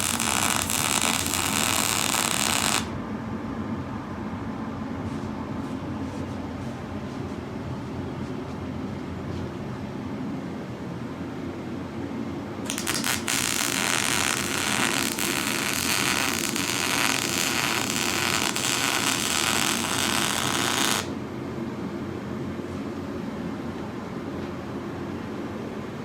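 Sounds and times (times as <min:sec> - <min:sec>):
welding arc crackling hiss: 0:00.0 - 0:02.9, 0:12.7 - 0:21.2
welding arc sputters: 0:00.0 - 0:02.9, 0:12.7 - 0:21.2.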